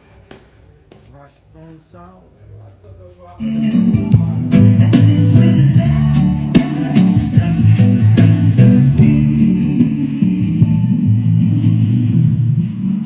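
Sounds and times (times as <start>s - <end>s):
reggae music: 3.4s - 13.0s.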